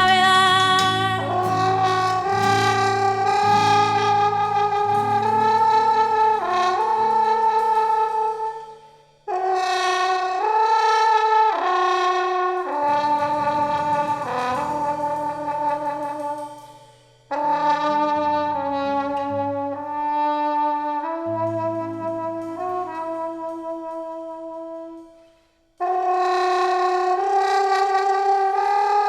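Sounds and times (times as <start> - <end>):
brass ensemble playing chords: 0.0 - 7.7.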